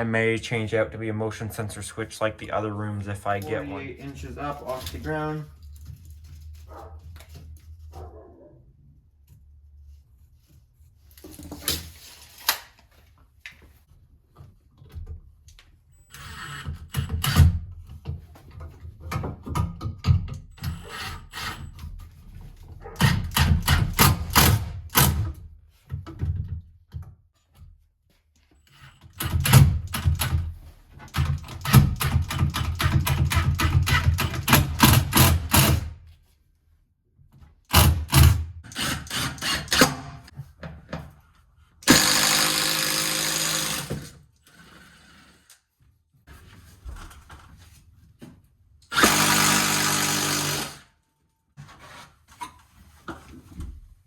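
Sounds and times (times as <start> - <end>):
power drill running: 20.6 - 21.6, 37.7 - 40.2, 41.8 - 45.2, 48.9 - 50.9
tools clicking and knocking: 28.7 - 35.8.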